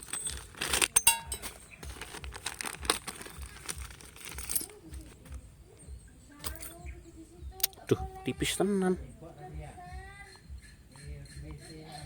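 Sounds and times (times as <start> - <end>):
metallic clinks and clicks: 0.0 - 5.2, 6.4 - 6.8.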